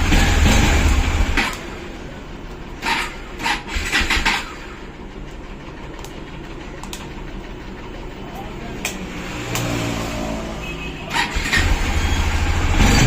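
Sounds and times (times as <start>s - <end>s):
motorcycle engine idling: 0.0s - 9.2s.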